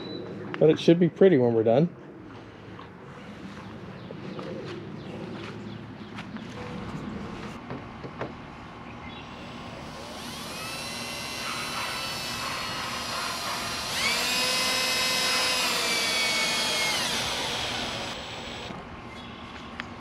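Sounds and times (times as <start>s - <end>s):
power tool motor whining: 9.3s - 18.8s.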